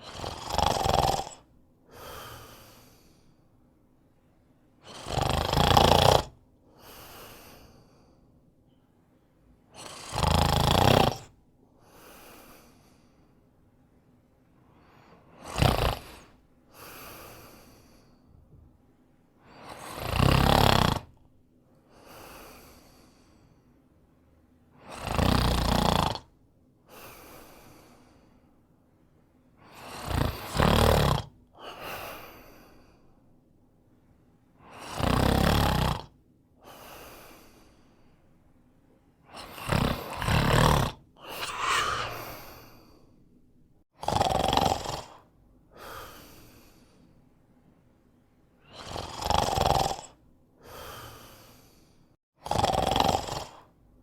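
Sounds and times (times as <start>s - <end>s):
man snoring: 0.0s - 3.2s, 4.8s - 7.8s, 9.8s - 12.1s, 15.4s - 18.0s, 19.6s - 21.2s, 24.8s - 26.3s, 29.7s - 31.4s, 34.7s - 37.3s, 39.3s - 42.9s, 44.0s - 46.6s, 48.7s - 51.8s, 52.4s - 53.8s
soft breath: 1.8s - 4.4s, 6.7s - 9.6s, 11.8s - 15.4s, 16.0s - 19.8s, 21.7s - 24.0s, 26.9s - 28.7s, 31.6s - 33.4s, 36.6s - 40.6s, 41.2s - 43.7s, 45.7s - 48.0s, 50.6s - 52.2s.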